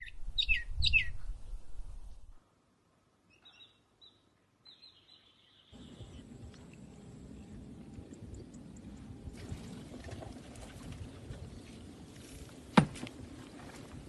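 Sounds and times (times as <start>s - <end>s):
low outdoor background noise: 0.0s - 14.0s
birds chirping: 3.3s - 9.4s.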